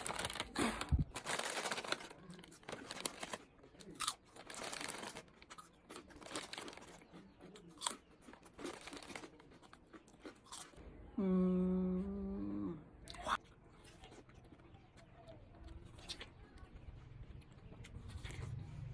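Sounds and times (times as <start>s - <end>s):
chip bag crinkling: 0.0s - 7.2s, 7.8s - 10.8s
potato chips crunching: 0.0s - 10.8s
person humming mm: 11.2s - 12.9s.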